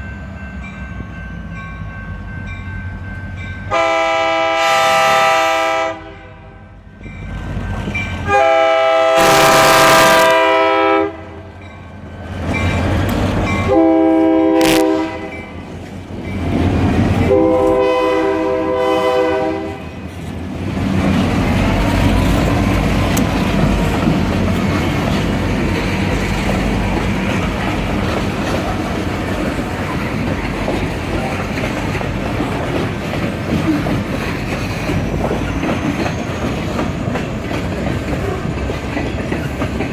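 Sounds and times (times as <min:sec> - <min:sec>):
locomotive air horn blasts: 0:03.7 - 0:06.8, 0:08.2 - 0:11.5, 0:13.7 - 0:15.5, 0:17.3 - 0:19.9
train wheels on rails: 0:06.8 - 0:39.9.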